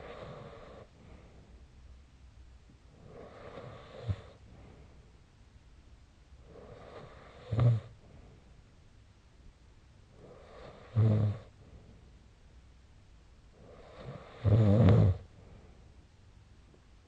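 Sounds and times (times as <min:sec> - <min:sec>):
person snoring: 0:10.2 - 0:11.5, 0:13.6 - 0:15.2.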